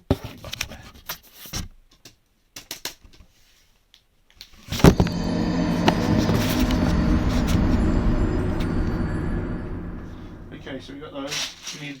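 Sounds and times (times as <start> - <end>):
loud steady noise with hum: 4.7 - 11.2.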